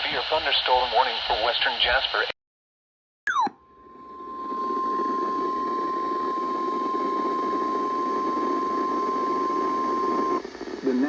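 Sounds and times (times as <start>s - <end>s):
radio static hiss: 0.0s - 2.4s, 7.4s - 11.0s.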